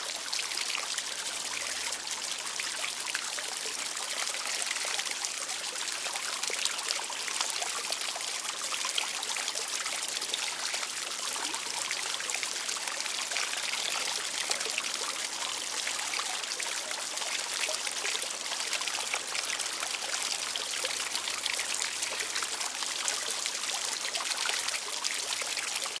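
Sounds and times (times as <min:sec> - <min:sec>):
water fountain splashing: 0:09.1 - 0:26.0.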